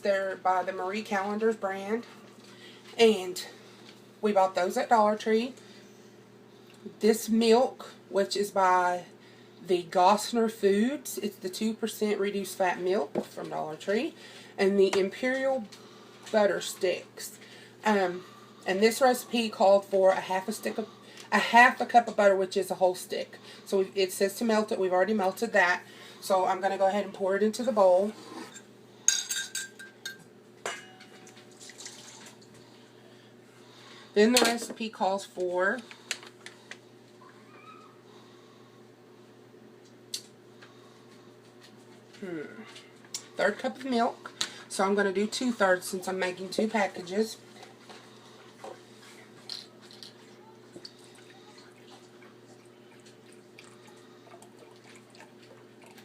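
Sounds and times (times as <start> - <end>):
dish clinking against bowl: 29.1 - 31.4
milk trickling into a cup: 31.3 - 32.7.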